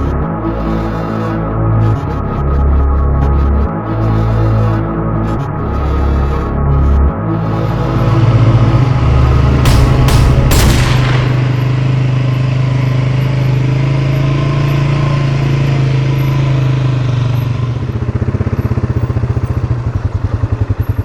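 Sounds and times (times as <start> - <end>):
atv engine running: 11.7 - 21.0.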